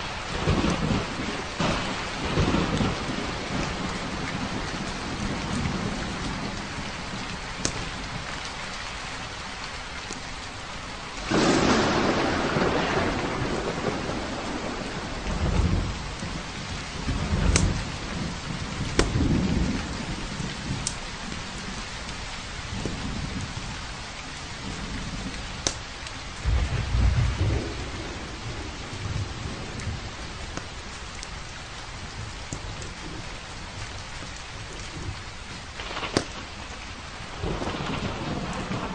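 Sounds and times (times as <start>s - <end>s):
thunder clap and rumbles: 0.0s - 8.6s, 11.2s - 38.9s
steady rain: 0.0s - 38.9s
crackling wood fire pops: 6.5s - 8.6s, 17.0s - 21.4s, 25.1s - 26.7s, 29.8s - 31.3s, 32.2s - 37.0s.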